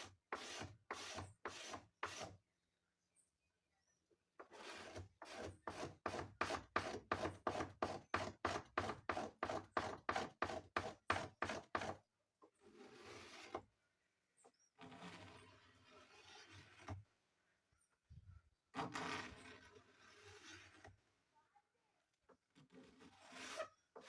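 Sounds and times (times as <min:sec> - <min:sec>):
knife scraping wooden door: 0:04.4 - 0:12.0, 0:12.6 - 0:13.7, 0:14.8 - 0:17.0, 0:18.7 - 0:21.0, 0:22.5 - 0:24.0.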